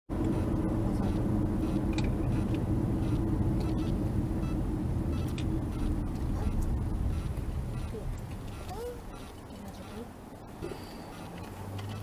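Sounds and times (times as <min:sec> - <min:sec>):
car engine and road rumble: 0:00.1 - 0:12.0.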